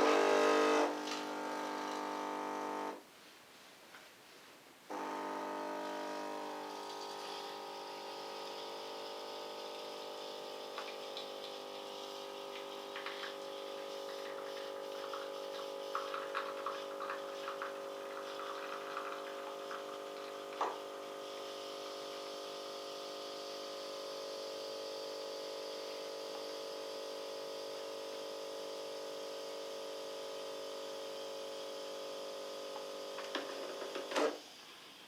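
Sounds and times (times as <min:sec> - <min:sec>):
espresso machine pump humming: 0:00.0 - 0:03.0, 0:04.9 - 0:34.7
liquid spitting and crackling: 0:06.7 - 0:07.7, 0:10.2 - 0:21.6.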